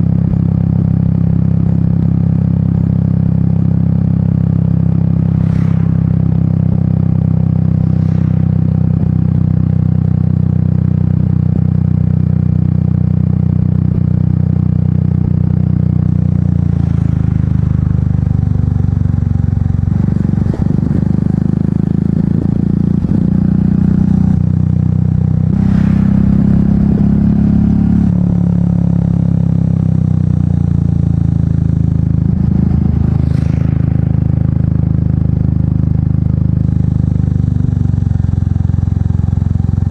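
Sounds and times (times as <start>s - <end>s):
rushing whooshes: 5.2s - 8.7s, 25.5s - 28.4s
motorcycle engine thumping: 13.7s - 36.6s.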